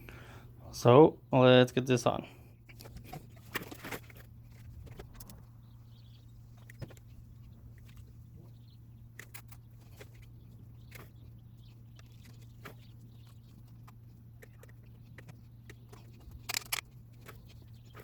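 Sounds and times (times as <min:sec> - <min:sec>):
steady low hum: 0:00.0 - 0:18.0
small clicks and rubs: 0:02.7 - 0:05.5, 0:06.5 - 0:18.0.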